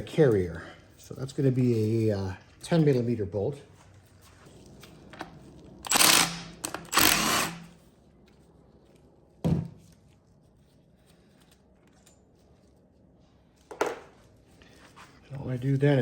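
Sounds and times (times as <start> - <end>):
cordless power tool running: 5.8 - 7.8.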